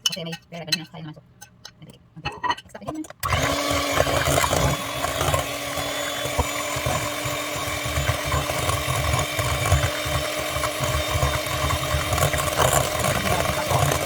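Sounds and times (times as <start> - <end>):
electric hand mixer running: 3.2 - 14.0.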